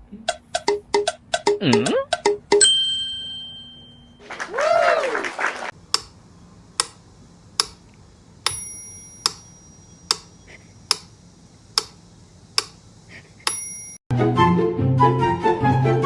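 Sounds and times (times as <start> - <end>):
bell-like ding: 2.6 - 4.2, 8.5 - 10.3, 13.5 - 14.0
sharp even ticking: 5.8 - 14.0
music: 14.1 - 16.0.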